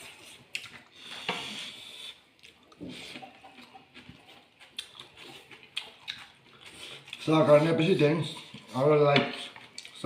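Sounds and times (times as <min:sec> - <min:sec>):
slurping: 0:00.0 - 0:10.0.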